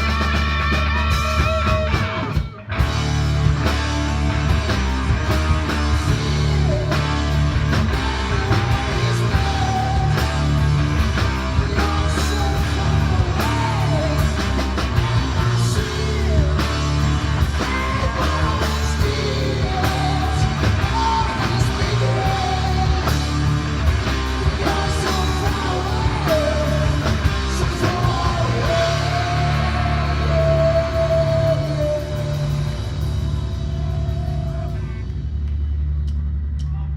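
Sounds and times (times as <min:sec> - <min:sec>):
rock music with guitar: 0:00.0 - 0:35.4
low bass notes: 0:00.0 - 0:36.9
person singing: 0:05.7 - 0:23.4, 0:24.2 - 0:34.9.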